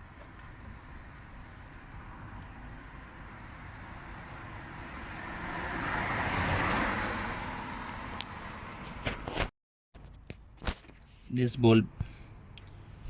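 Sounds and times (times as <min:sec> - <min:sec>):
car passing on road: 0:00.0 - 0:09.5
background traffic noise: 0:00.0 - 0:13.0.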